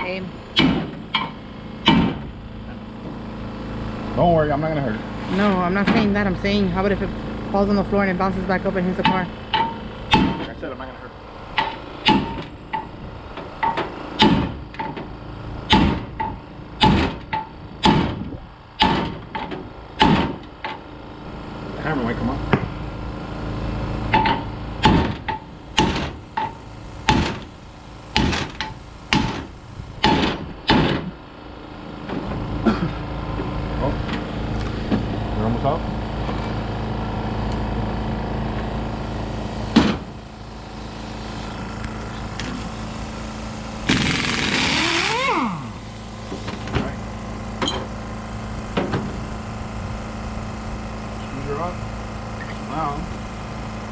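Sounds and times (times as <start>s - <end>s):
steady mechanical hum: 0.0s - 53.9s
hammer striking metal: 0.6s - 2.2s, 9.0s - 10.5s, 11.6s - 12.9s, 13.6s - 15.0s, 15.7s - 18.1s, 24.1s - 27.4s.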